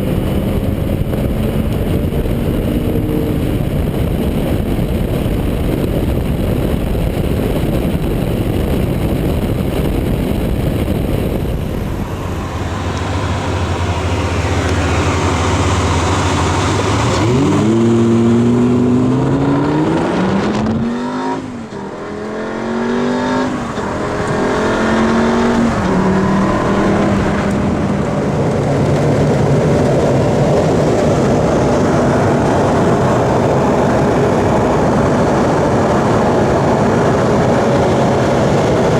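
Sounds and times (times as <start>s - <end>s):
car engine accelerating hard: 0.0s - 38.9s
steady rushing noise: 0.0s - 38.9s.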